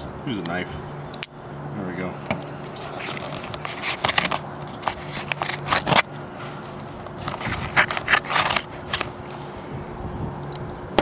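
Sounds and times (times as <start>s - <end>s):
package being torn open: 7.2s - 9.1s.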